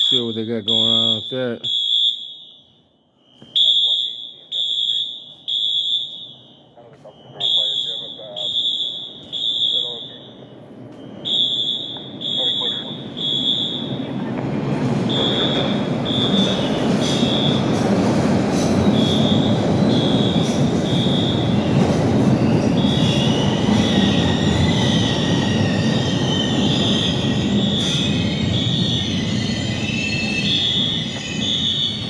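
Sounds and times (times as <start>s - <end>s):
train wheels squealing: 0.0s - 1.4s, 6.1s - 32.0s
fire alarm short high beeps: 0.0s - 17.8s, 18.8s - 32.0s
subway train rumble: 6.7s - 32.0s.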